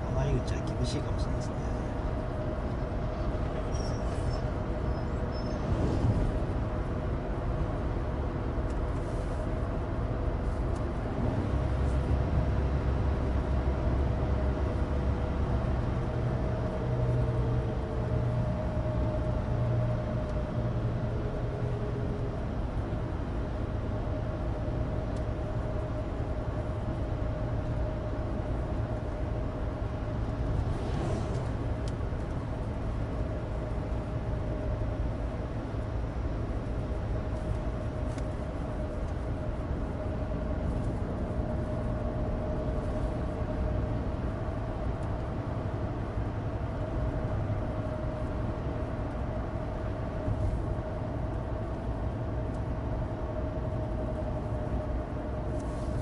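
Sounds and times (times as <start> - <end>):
car engine drone: 0.0 - 56.0
tyre road noise: 0.0 - 56.0
low rumble: 4.4 - 8.4, 28.3 - 45.6.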